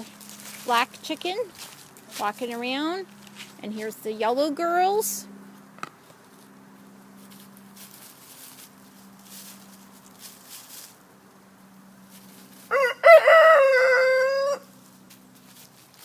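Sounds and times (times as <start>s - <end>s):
faint steady hum: 0.0s - 16.0s
rooster crowing: 12.6s - 14.8s.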